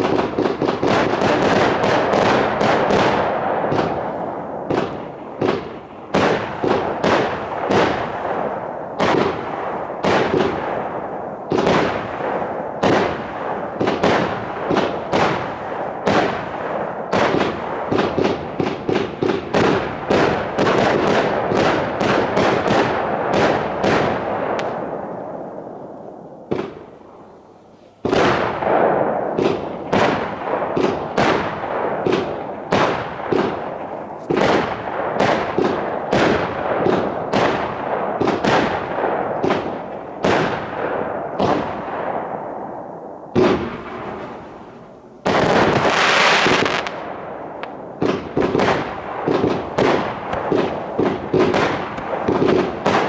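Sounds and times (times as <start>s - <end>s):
firework cake bangs: 11.5s - 24.9s, 28.0s - 41.9s, 48.0s - 53.0s.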